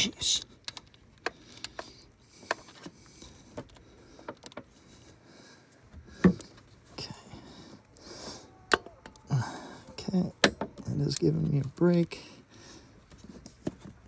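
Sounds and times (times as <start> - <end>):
hand tools clicking on metal: 7.8 - 11.8.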